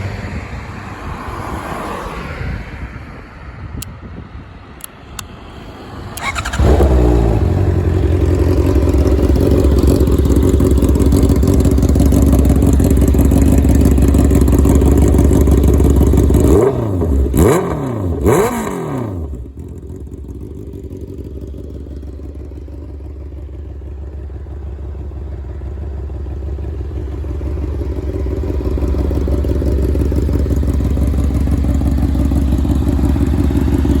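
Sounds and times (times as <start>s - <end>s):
motorcycle engine idling: 6.1s - 17.4s, 19.3s - 34.0s
motorcycle throttle blips: 6.1s - 18.8s.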